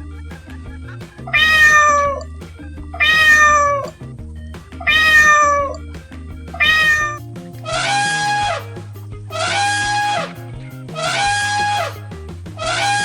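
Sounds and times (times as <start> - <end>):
background music: 0.0 - 13.0
cat meowing: 1.3 - 2.2, 3.0 - 3.9, 4.9 - 5.8, 6.6 - 7.2.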